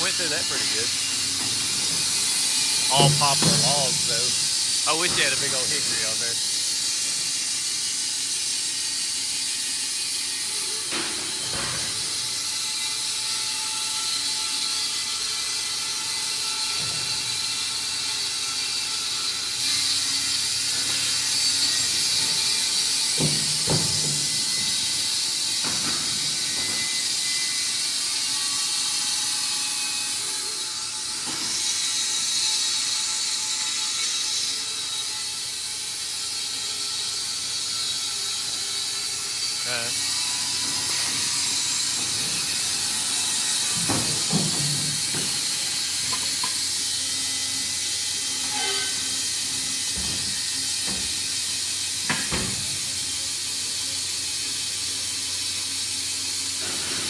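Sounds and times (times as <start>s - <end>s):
sawmill machinery hissing: 0.0s - 57.0s
knocks and clanks: 2.8s - 4.2s, 23.1s - 25.0s, 43.7s - 46.6s.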